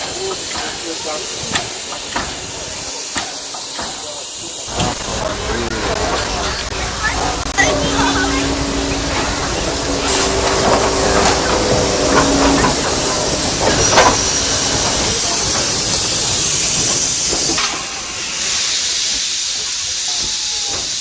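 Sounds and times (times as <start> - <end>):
steam locomotive venting steam: 0.0 - 21.0
high whistling tone: 7.5 - 14.6.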